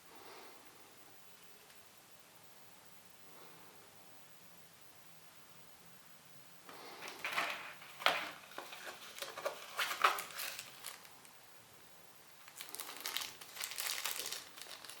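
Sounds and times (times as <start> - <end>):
packaging crinkling and rustling: 6.7 - 11.4, 12.4 - 15.0.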